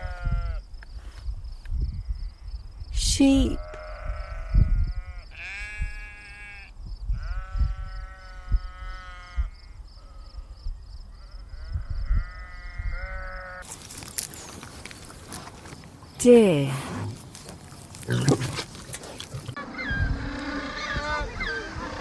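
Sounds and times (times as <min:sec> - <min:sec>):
sheep bleating: 0:03.6 - 0:10.3.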